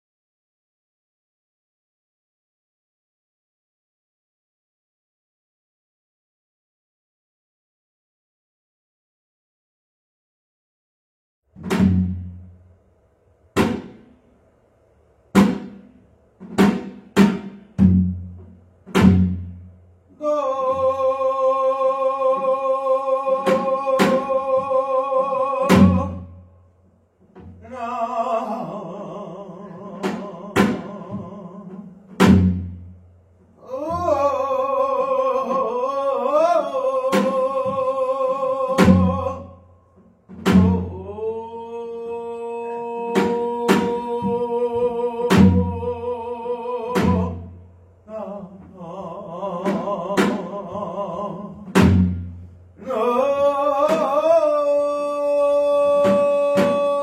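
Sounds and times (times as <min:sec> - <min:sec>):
drum strokes: 0:11.5 - 0:14.3, 0:15.3 - 0:20.1, 0:20.7 - 0:26.5, 0:27.2 - 0:41.1, 0:43.1 - 0:57.0.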